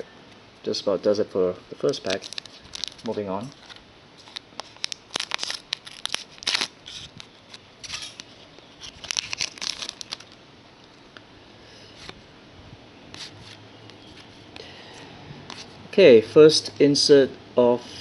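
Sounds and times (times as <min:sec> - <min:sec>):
cards rustling: 0:01.8 - 0:10.4
wrapper crinkling and tearing: 0:01.8 - 0:10.4.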